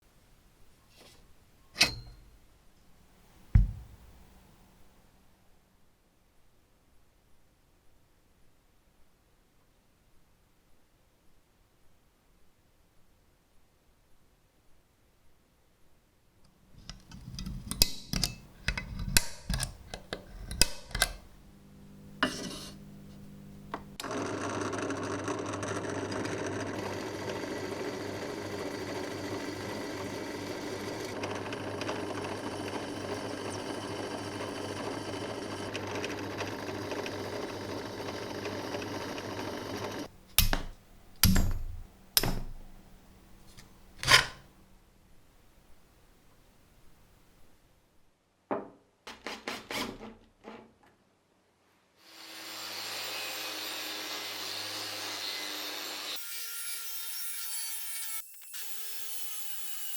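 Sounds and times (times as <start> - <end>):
sharp knocks: 3.6 - 4.2.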